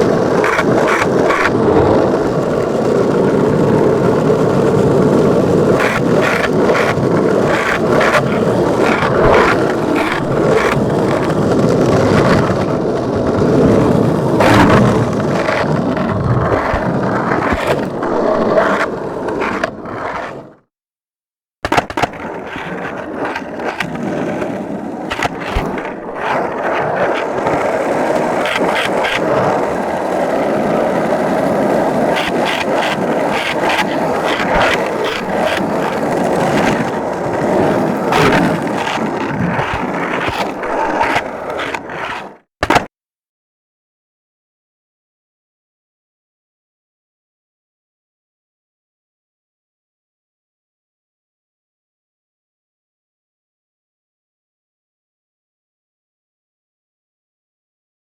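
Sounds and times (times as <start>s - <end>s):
skateboard clicks and knocks: 0.0s - 20.6s, 21.6s - 42.9s
skateboard wheels rolling: 0.0s - 20.6s, 21.6s - 42.9s.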